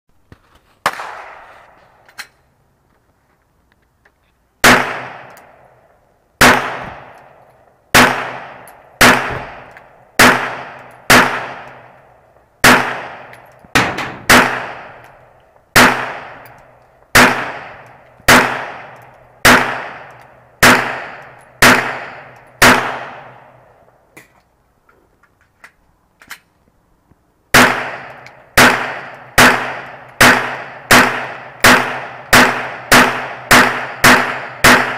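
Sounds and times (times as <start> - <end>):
pistol shots echoing: 0.8 - 1.5, 4.6 - 5.7, 6.4 - 12.0, 12.6 - 23.6, 27.5 - 34.9.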